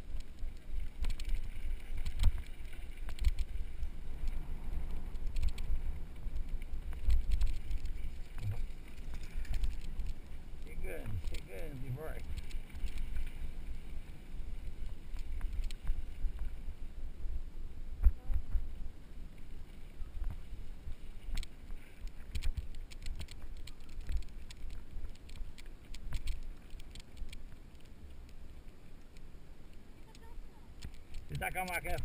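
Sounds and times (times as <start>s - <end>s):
bike clicking and rattling: 0.0s - 13.8s, 21.3s - 28.3s.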